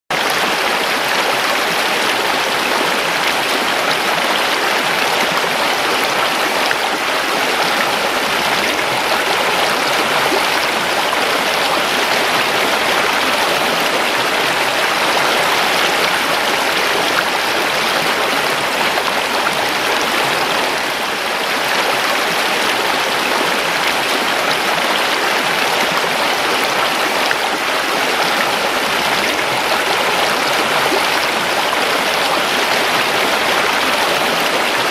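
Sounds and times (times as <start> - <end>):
creek water rushing over stones: 0.1 - 34.9.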